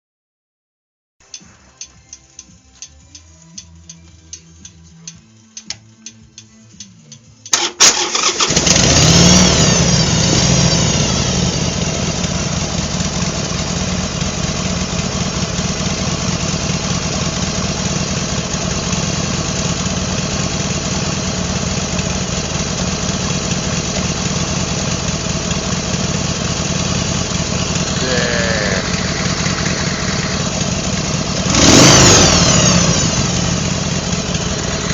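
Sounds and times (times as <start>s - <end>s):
motorcycle engine starting and idling: 1.3s - 34.9s
engine revving: 7.5s - 21.7s, 22.5s - 34.9s.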